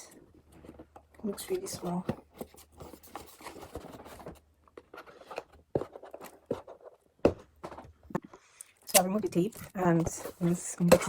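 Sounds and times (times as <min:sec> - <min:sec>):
rustling: 0:00.3 - 0:08.0.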